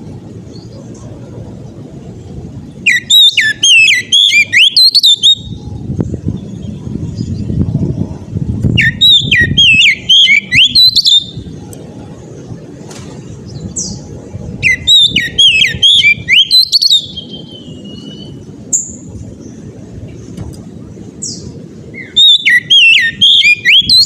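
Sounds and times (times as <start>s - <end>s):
bird singing whistled phrases: 2.8s - 5.8s, 8.8s - 11.4s, 14.6s - 19.0s, 21.3s - 24.0s.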